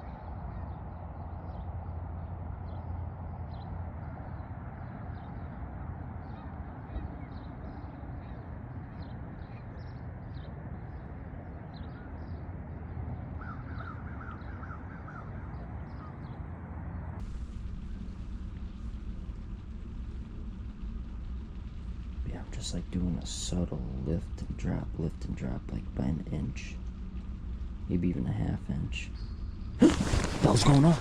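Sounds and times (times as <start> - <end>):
low wind rumble: 0.0 - 31.0
birds calling: 13.2 - 16.4, 29.1 - 31.0.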